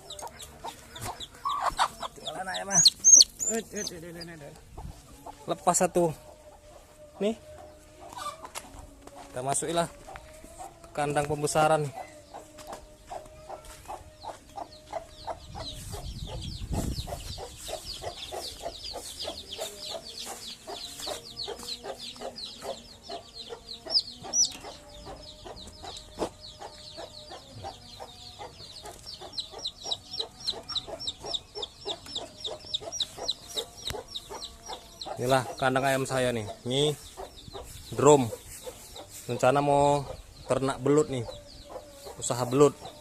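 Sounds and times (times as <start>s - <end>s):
hens clucking: 0.0s - 11.0s, 11.8s - 43.0s
chicks peeping: 0.0s - 43.0s.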